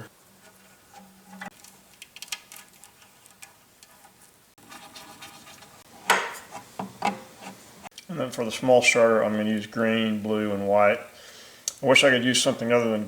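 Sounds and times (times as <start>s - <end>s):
wires and small parts clinking: 0.9s - 4.4s.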